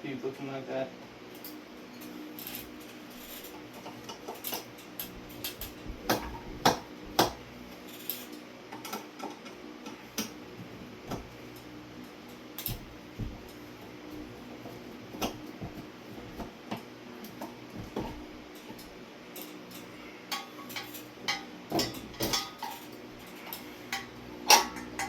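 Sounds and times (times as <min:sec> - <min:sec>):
faint steady hum: 0:00.0 - 0:25.0
clicks and metallic knocks: 0:17.4 - 0:25.0.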